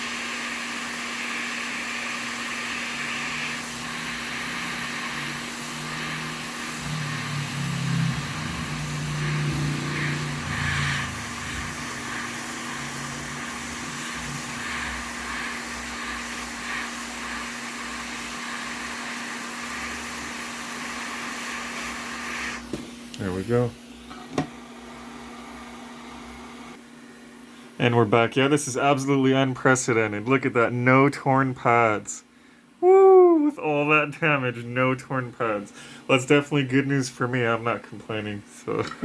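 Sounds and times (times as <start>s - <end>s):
hot-air station blowing: 0.0s - 26.8s.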